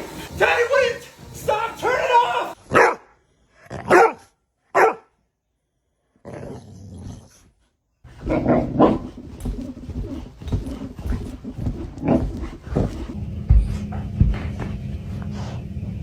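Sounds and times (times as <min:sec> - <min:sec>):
dog barking: 0:02.7 - 0:03.2, 0:03.8 - 0:05.2
dog growling: 0:06.2 - 0:07.5, 0:08.1 - 0:15.7.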